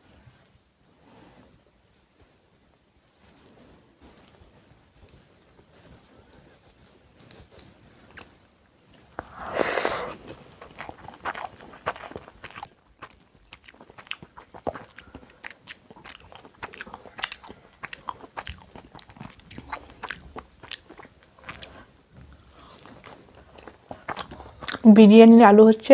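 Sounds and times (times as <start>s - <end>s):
person chewing food: 3.0s - 24.9s
food crunch: 9.7s - 24.9s.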